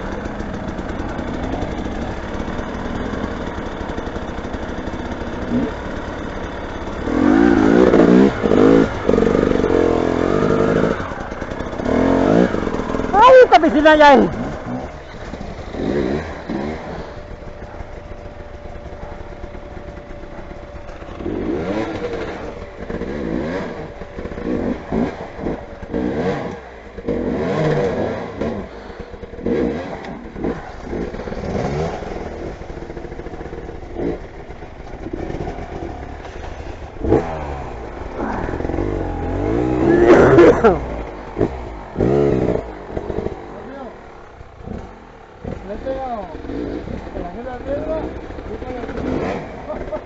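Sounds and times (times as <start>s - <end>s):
motorcycle engines revving: 0.0s - 50.0s.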